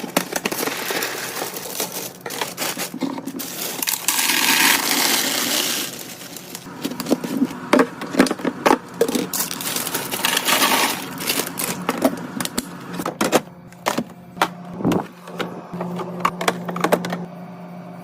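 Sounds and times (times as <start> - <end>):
packaging rustling: 0.0 - 7.6, 9.0 - 12.5.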